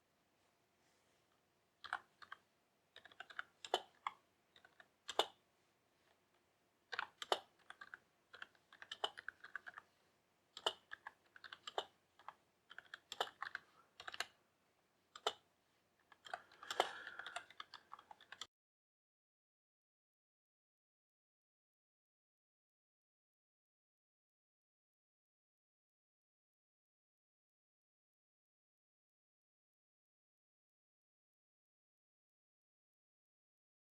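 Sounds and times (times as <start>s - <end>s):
keyboard key clicks: 3.0s - 5.4s, 6.9s - 9.8s, 10.6s - 14.3s, 15.2s - 15.4s.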